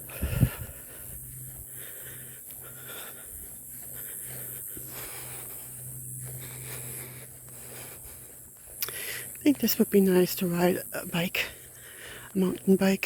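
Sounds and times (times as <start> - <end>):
person breathing heavily: 0.0 - 9.4, 11.4 - 12.4
steady low hum: 0.0 - 13.0.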